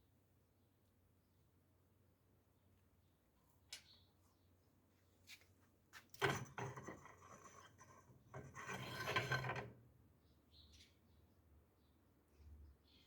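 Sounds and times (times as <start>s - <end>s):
long rasping scrapes: 6.2s - 9.7s.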